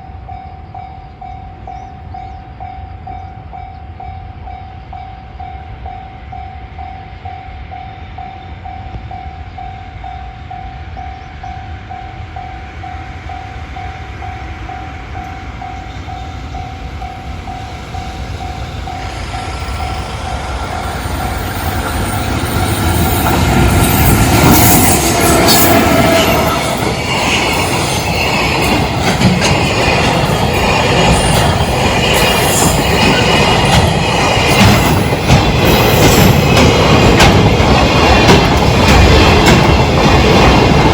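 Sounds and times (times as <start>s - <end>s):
freight train approaching: 0.0s - 40.9s
level-crossing alarm ringing: 15.2s - 40.1s.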